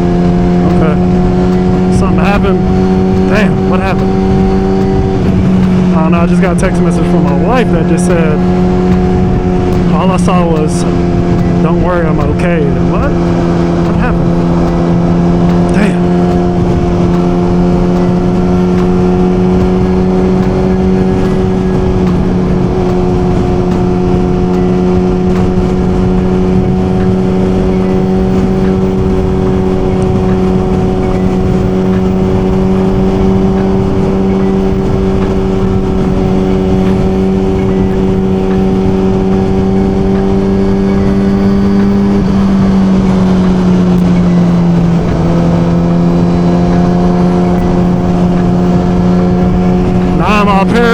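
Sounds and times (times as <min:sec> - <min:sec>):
motorcycle engine cruising: 0:00.0 - 0:50.9
road and wind noise: 0:00.0 - 0:50.9.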